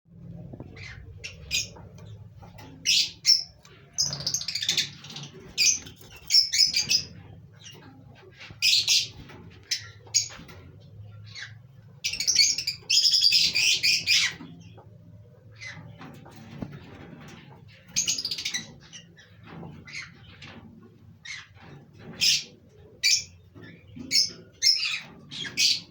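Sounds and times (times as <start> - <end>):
steady low hum: 0.1 - 12.1
birds chirping and squawking: 0.1 - 25.9.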